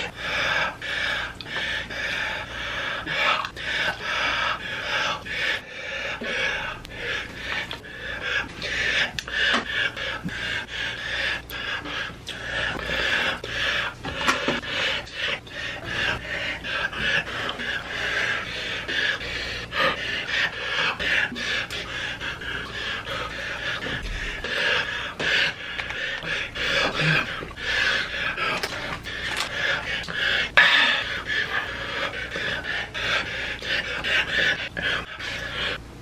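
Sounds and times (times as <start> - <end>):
man gasping and panting: 0.0 - 35.8.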